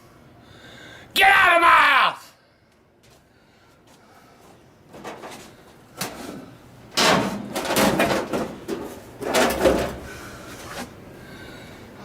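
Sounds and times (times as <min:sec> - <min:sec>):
metal banging and rattling: 0:06.9 - 0:10.1.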